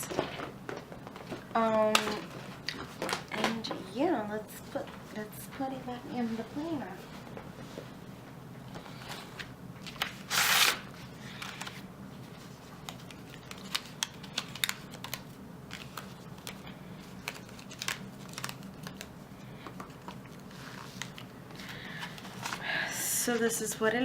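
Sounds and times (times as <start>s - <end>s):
paper rustling: 8.7s - 22.6s.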